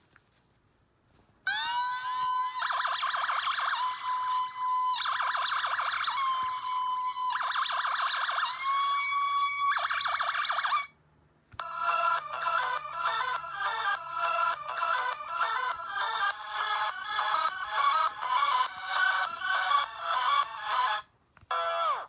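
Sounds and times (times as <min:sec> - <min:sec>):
toy siren sound effect: 0:01.5 - 0:11.0, 0:11.6 - 0:22.0
bright electronic tune: 0:11.6 - 0:21.0.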